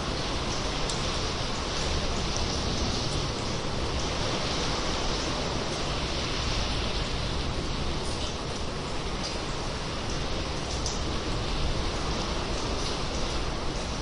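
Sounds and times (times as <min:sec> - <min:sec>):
sea water rushing in a cave: 0:00.0 - 0:14.0.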